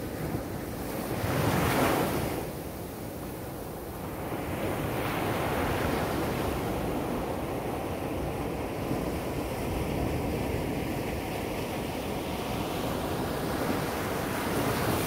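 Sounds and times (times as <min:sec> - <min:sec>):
sea surf breaking on beach: 0:00.0 - 0:02.6, 0:04.0 - 0:15.0.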